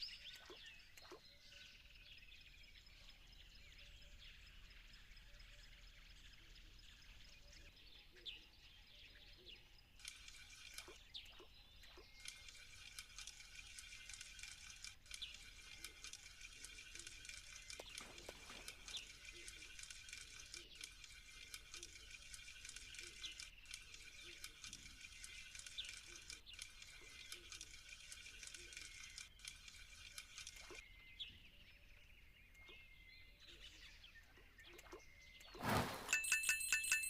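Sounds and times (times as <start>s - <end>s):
small ticks: 10.0s - 30.8s.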